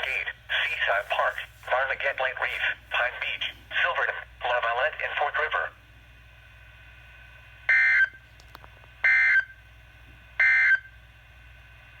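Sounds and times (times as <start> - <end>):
faint radio hiss and hum: 0.0 - 9.1.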